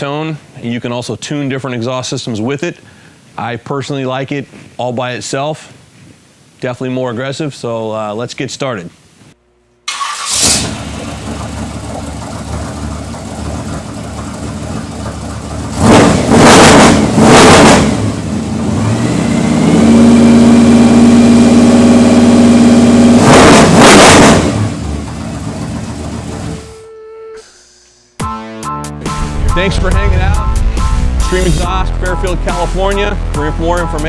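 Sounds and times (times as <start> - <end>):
engine idling and revving: 10.3 - 26.7.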